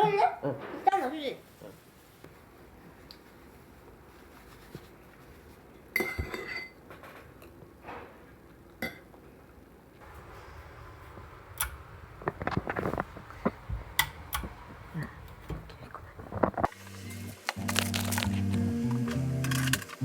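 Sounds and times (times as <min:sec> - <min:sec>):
spoon and dishes clinking: 0:05.9 - 0:06.8, 0:08.8 - 0:09.1, 0:19.1 - 0:20.0.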